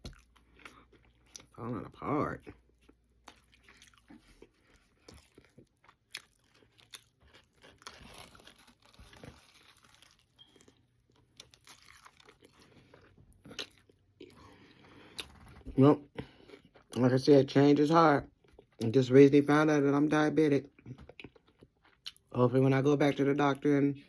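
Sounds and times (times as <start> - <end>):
person chewing food: 0.0 - 17.0, 18.3 - 18.9, 20.7 - 22.3.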